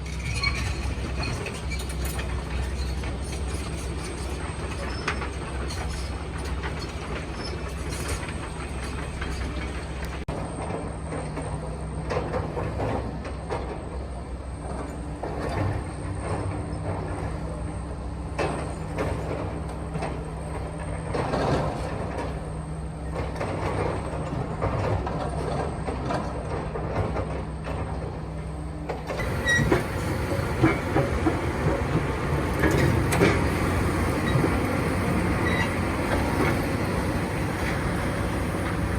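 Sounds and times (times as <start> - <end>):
excavator engine running: 29.0 - 38.9.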